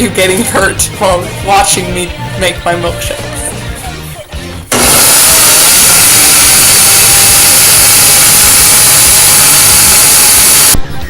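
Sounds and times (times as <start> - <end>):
blender whirring: 4.7 - 10.8.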